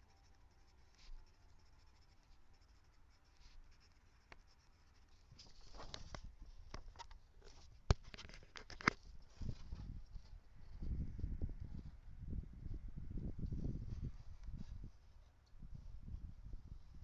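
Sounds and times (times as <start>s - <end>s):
scratching and rustling handling: 0.0s - 10.8s.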